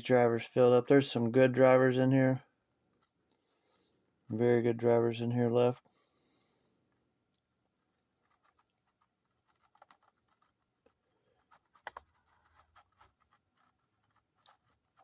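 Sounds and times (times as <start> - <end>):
small clicks and taps: 8.2 - 15.0.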